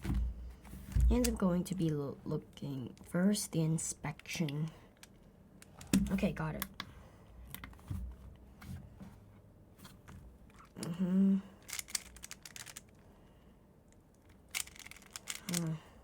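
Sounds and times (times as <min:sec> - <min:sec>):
speed cube clicking: 0:11.6 - 0:12.9, 0:14.2 - 0:15.8.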